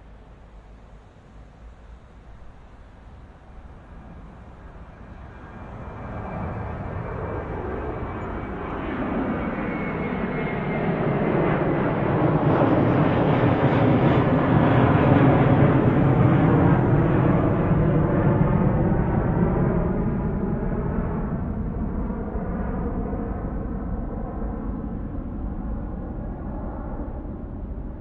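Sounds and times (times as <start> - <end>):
faint high whine: 0.0 - 20.2
airliner engine rushing: 0.0 - 28.0.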